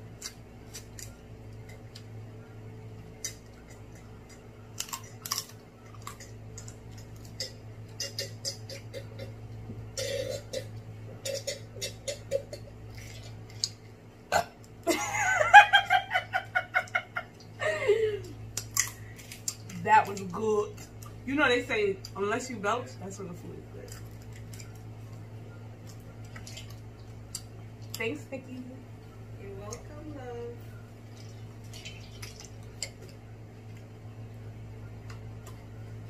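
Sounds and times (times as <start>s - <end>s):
mouth sounds of eating: 3.1s - 14.7s
long loud belch: 10.0s - 12.2s, 14.3s - 14.6s.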